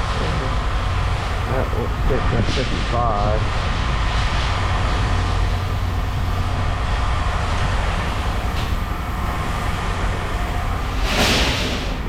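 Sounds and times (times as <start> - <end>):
large engine rumbling: 0.0 - 12.0.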